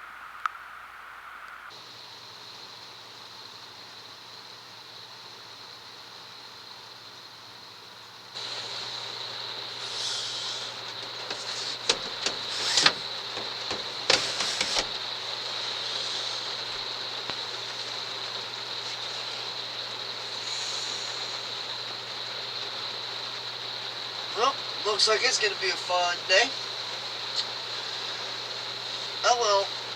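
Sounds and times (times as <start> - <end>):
steady rain hiss: 0.0 - 29.9
clicks and knocks: 10.9 - 15.0.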